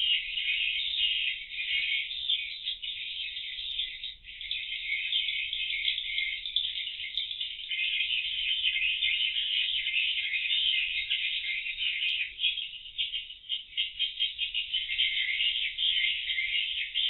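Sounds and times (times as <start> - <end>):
swiftlets twittering: 0.0 - 8.9.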